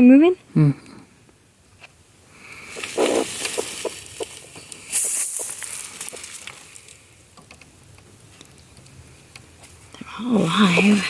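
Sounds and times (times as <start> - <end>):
hen hissing: 2.4 - 6.4, 10.2 - 11.0
rustling of nesting material: 2.7 - 7.0.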